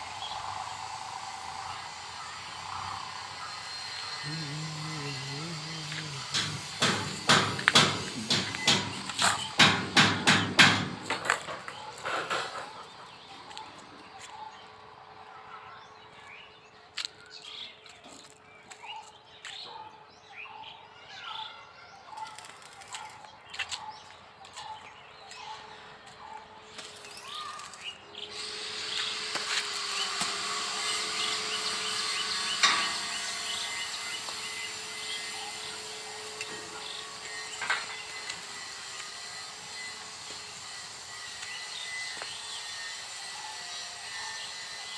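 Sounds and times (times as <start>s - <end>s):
birds chirping: 0.0s - 44.9s
arc welding crackle: 0.1s - 11.4s, 22.2s - 23.2s, 26.8s - 43.2s.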